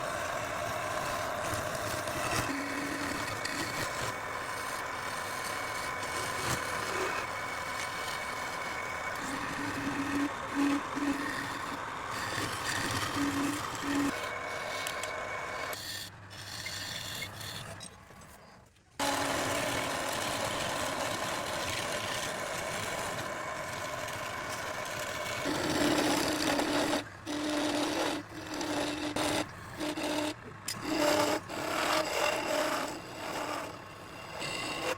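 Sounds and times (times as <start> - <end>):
tool rasping against wood: 0.0 - 15.1, 24.1 - 34.9
lathe humming: 0.0 - 17.7, 19.0 - 34.9.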